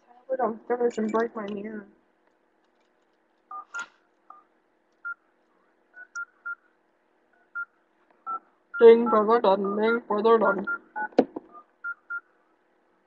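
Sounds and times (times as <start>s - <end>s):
phone keypad beeps: 3.5s - 4.4s, 6.0s - 6.6s, 10.6s - 12.3s.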